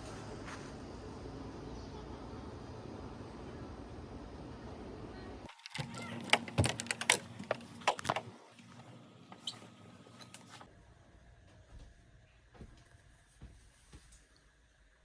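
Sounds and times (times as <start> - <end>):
outdoor background noise: 0.0 - 15.0
sharp clicks and knocks: 5.5 - 8.4.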